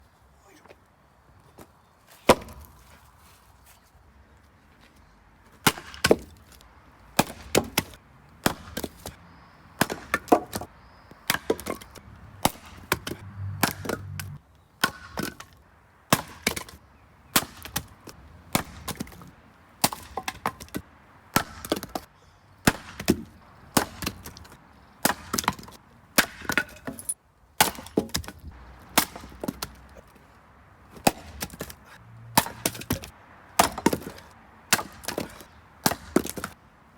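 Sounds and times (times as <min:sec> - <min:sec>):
axe splitting firewood: 0:02.2 - 0:02.9, 0:05.6 - 0:09.2, 0:09.8 - 0:30.2, 0:30.9 - 0:36.6
small wood knocks: 0:09.8 - 0:15.6.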